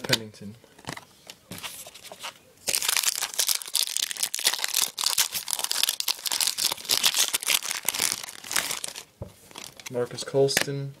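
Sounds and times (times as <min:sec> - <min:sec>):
wrapper crinkling: 0:01.8 - 0:09.9.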